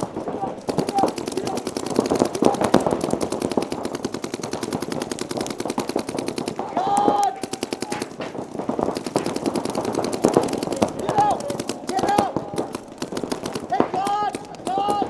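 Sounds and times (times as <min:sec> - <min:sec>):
paintball markers firing: 0:00.0 - 0:15.0
person shouting: 0:06.6 - 0:08.0, 0:13.7 - 0:15.0.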